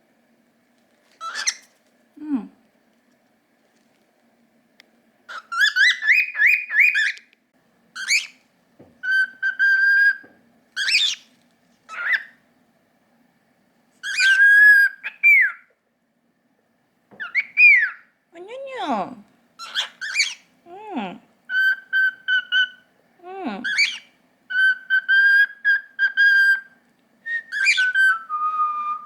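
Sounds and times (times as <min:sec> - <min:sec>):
cockatiel whistling: 0:05.3 - 0:07.2, 0:08.0 - 0:08.4, 0:09.0 - 0:11.2, 0:14.0 - 0:15.6, 0:17.2 - 0:18.0, 0:19.6 - 0:20.4, 0:21.5 - 0:22.8, 0:23.7 - 0:29.0.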